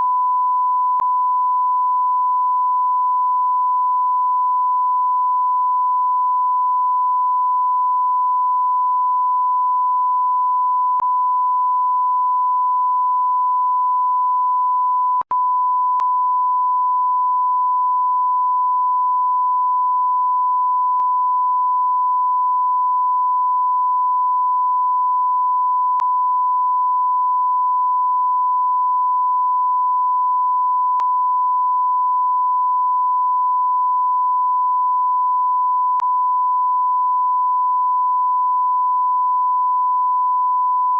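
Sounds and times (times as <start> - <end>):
censor bleep tone: 0.0 - 40.9.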